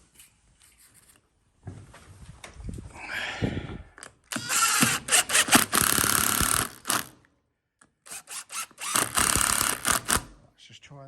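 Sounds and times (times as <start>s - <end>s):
cordless drill driving screws: 4.3s - 7.2s, 8.0s - 10.4s.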